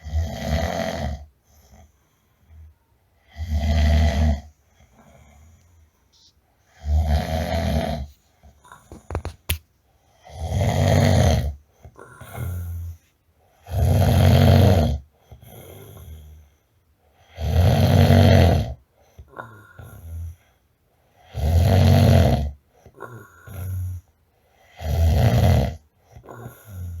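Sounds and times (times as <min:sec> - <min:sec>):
person snoring loudly: 0:00.0 - 0:01.3, 0:03.3 - 0:04.5, 0:06.8 - 0:08.1, 0:10.2 - 0:12.7, 0:13.6 - 0:15.0, 0:17.3 - 0:18.8, 0:21.3 - 0:24.0, 0:24.8 - 0:27.0
soft breathing: 0:01.4 - 0:02.8.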